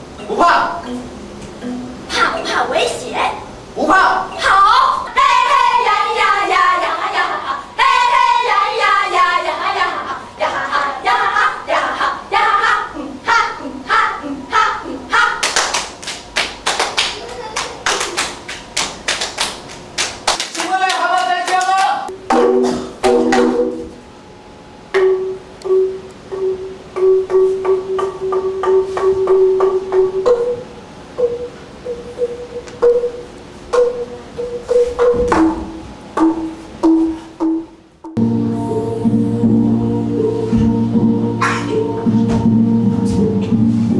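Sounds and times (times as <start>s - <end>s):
instrumental music with picked notes: 0.1s - 2.6s, 22.1s - 24.0s
people singing high phrases: 4.2s - 15.4s.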